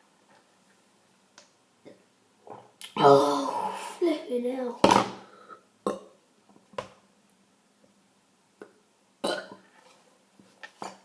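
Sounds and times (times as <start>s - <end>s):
person burping: 1.8s - 3.9s, 5.8s - 6.2s, 9.2s - 9.6s.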